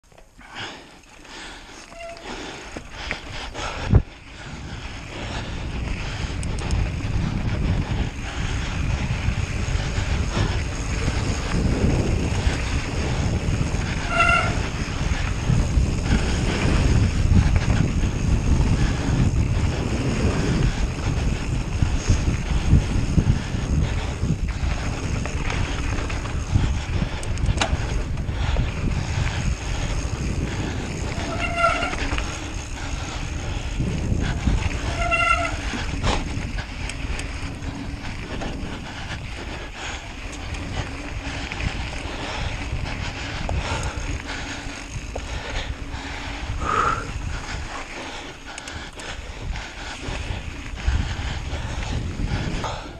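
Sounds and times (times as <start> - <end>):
wind buffeting microphone: 0.7 - 52.9
short high squeak: 1.9 - 2.3.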